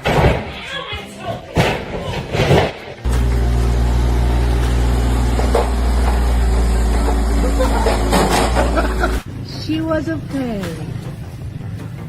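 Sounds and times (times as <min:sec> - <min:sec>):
machine engine drone: 0:03.0 - 0:09.3.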